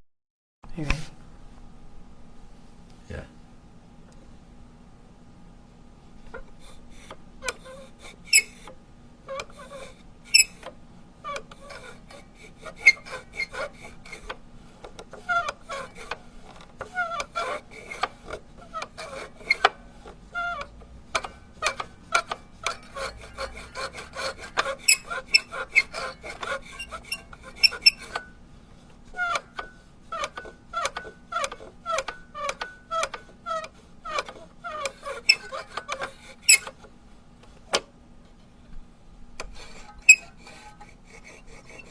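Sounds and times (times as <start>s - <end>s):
rubber duck toy squeaks: 9.5s - 10.6s, 21.6s - 28.2s, 36.4s - 36.7s, 40.1s - 40.4s.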